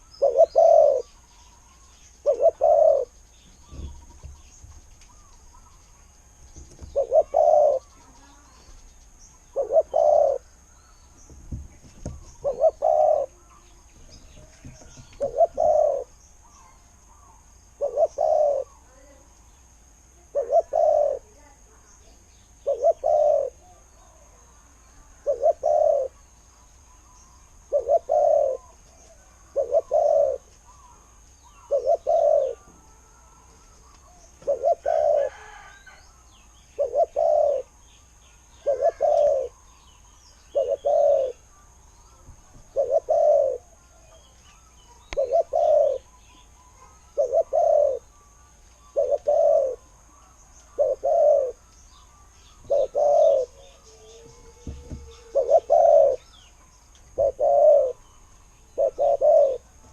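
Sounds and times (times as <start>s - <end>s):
dove cooing: 0.0s - 1.2s, 2.2s - 4.4s, 6.7s - 8.6s, 9.5s - 10.6s, 12.0s - 19.3s, 20.2s - 21.8s, 22.6s - 24.4s, 25.0s - 26.2s, 27.6s - 36.0s, 36.7s - 37.8s, 38.6s - 39.6s, 40.4s - 41.6s, 42.6s - 48.2s, 48.8s - 58.0s, 58.6s - 59.9s.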